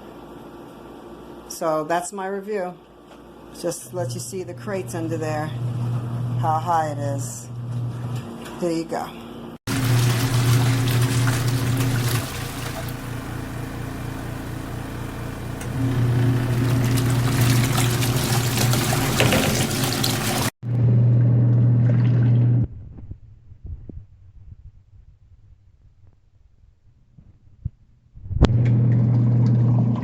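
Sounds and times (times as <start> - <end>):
washing machine motor humming: 3.9 - 8.8, 9.7 - 22.6
water churning in tub: 9.7 - 20.6.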